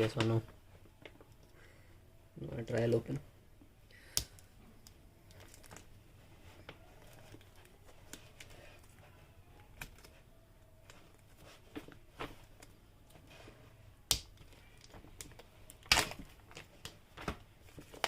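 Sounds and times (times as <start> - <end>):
packaging crinkling: 5.3 - 5.9.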